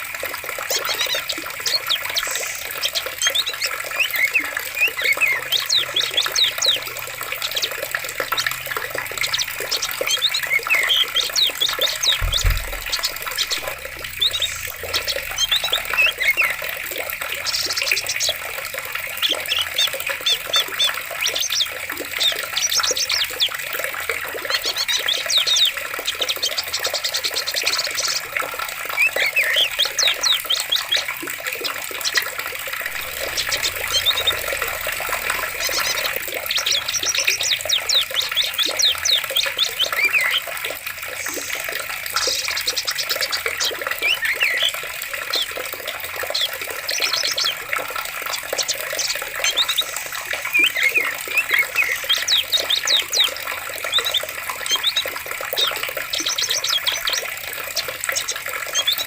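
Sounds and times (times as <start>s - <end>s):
running water: 0.0s - 59.0s
small birds chirping: 0.0s - 59.0s
low thud: 12.1s - 13.3s.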